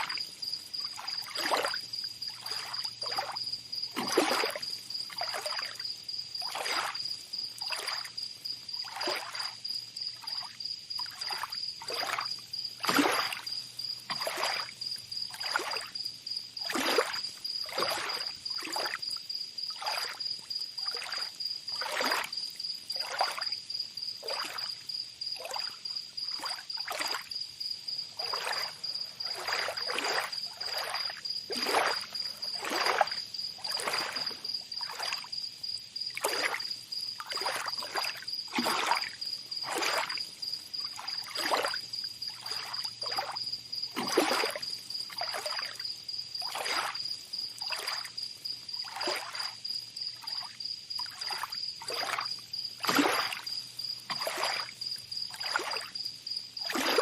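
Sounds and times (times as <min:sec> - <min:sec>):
water splashing: 0:00.0 - 0:05.8, 0:06.4 - 0:07.0, 0:07.6 - 0:08.1, 0:08.8 - 0:09.6, 0:10.2 - 0:16.0, 0:16.6 - 0:19.1, 0:19.7 - 0:20.2, 0:20.8 - 0:22.3, 0:23.0 - 0:23.5, 0:24.2 - 0:24.8, 0:25.4 - 0:27.3, 0:28.0 - 0:35.3, 0:36.1 - 0:45.8, 0:46.4 - 0:47.0, 0:47.6 - 0:48.1, 0:48.8 - 0:49.6, 0:50.2 - 0:53.5, 0:54.1 - 0:55.9, 0:56.6 - 0:57.0
high pulsing insect trill: 0:00.0 - 0:57.0.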